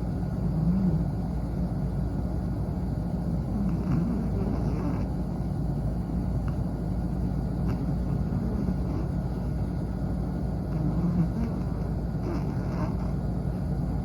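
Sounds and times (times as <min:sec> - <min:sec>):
dog snoring: 0:00.4 - 0:01.3, 0:03.4 - 0:05.5, 0:06.4 - 0:14.0.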